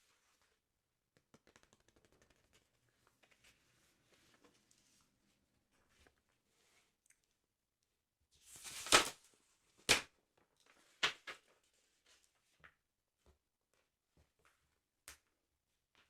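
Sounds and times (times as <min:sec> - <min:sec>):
paper rustling: 0:08.5 - 0:09.2
paper cracking and snapping: 0:08.6 - 0:09.2.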